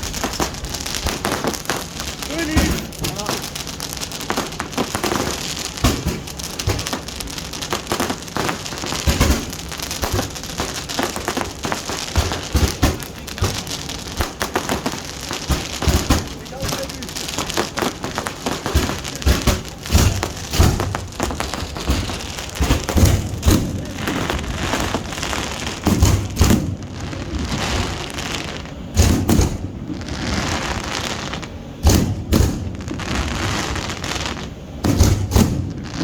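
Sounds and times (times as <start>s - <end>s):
crackling hiss of fireworks: 0.0s - 36.0s
fireworks bursting with sharp bangs: 0.0s - 36.0s.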